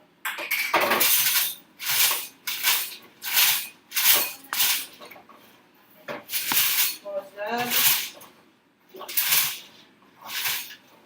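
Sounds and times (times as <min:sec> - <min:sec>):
cereal rattling into a bowl: 0:07.6 - 0:08.2, 0:09.0 - 0:10.8.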